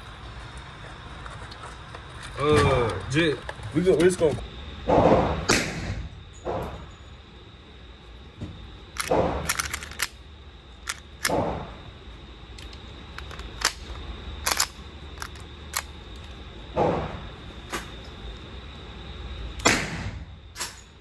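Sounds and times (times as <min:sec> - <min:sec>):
pistol shots echoing indoors: 0:04.9 - 0:06.6, 0:09.0 - 0:10.2, 0:10.9 - 0:11.9, 0:19.6 - 0:20.9.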